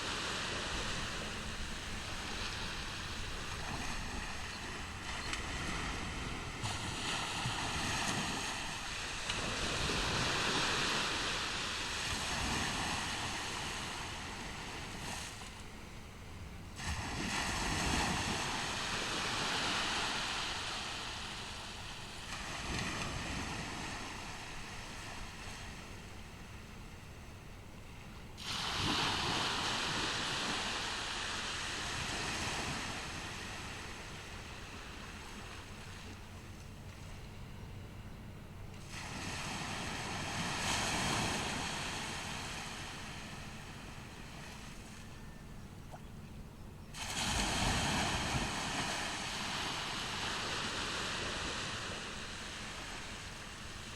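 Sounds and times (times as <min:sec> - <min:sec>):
ocean wave breaking on beach: 0:00.0 - 0:15.7, 0:16.8 - 0:26.6, 0:28.4 - 0:36.2, 0:38.8 - 0:45.2, 0:46.9 - 0:53.9
steady sea wash: 0:00.0 - 0:53.9
foam hissing up shore: 0:28.4 - 0:33.9, 0:47.0 - 0:53.9.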